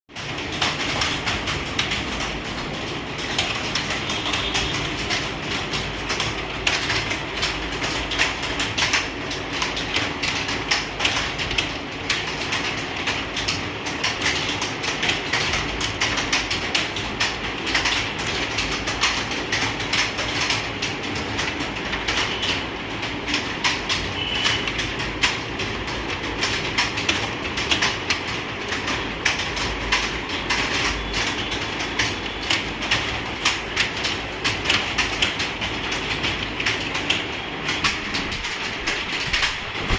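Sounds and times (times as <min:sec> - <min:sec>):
computer keyboard typing: 0:00.1 - 0:39.9.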